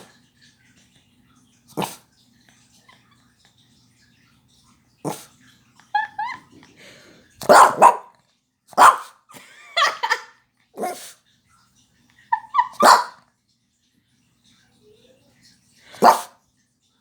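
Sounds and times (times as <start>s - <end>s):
dog barking: 1.8s - 2.0s, 7.4s - 9.2s, 10.8s - 11.2s, 12.6s - 13.2s, 15.9s - 16.4s.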